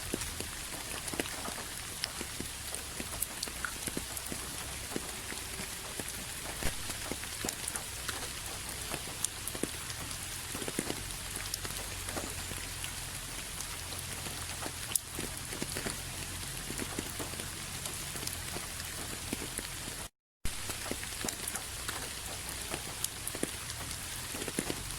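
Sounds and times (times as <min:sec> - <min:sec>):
steady rain falling: 0:00.0 - 0:24.9.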